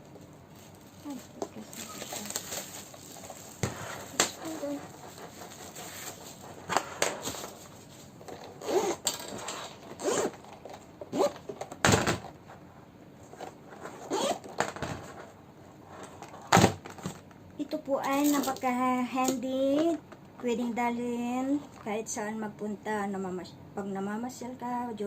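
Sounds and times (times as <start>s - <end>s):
packaging scraping and rustling: 0.2s - 11.8s.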